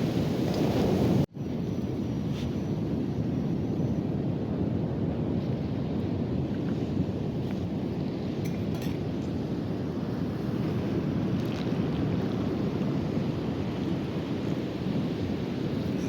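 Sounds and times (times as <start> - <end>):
ocean surf rushing: 0.0 - 1.3
wind rumbling on microphone: 0.0 - 16.0.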